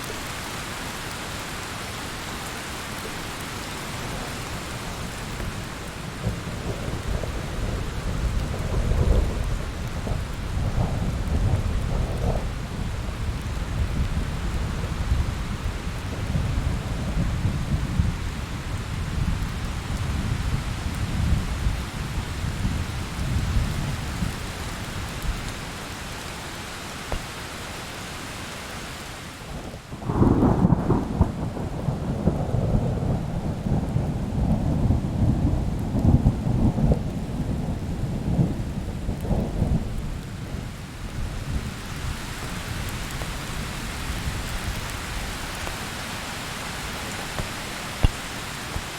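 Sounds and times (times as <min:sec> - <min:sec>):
steady rain hiss: 0:00.0 - 0:48.9
low rolling thunder: 0:04.0 - 0:25.5, 0:29.6 - 0:45.8
loud thunderclap: 0:30.0 - 0:40.0.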